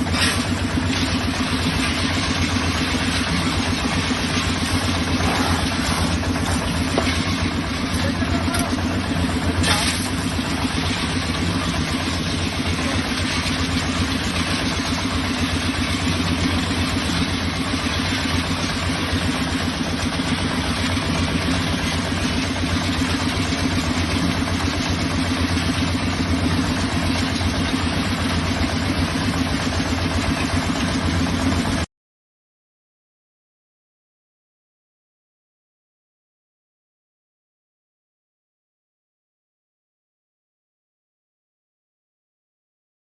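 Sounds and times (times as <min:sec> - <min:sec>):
engine idling: 0:00.0 - 0:31.9.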